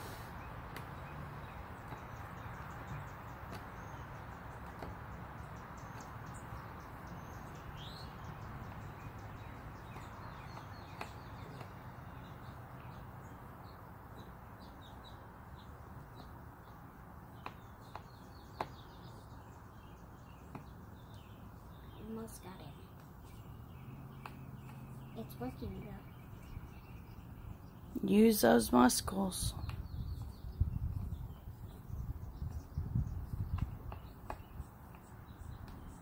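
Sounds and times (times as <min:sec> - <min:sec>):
background hiss: 0:00.0 - 0:00.5
small birds chirping: 0:00.0 - 0:36.0.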